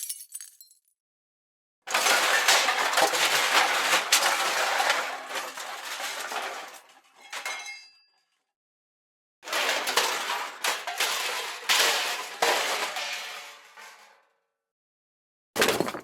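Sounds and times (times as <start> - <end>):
objects smashing: 0.0 - 0.8, 15.6 - 16.0
pieces clinking and clattering: 0.0 - 0.9, 15.6 - 16.0.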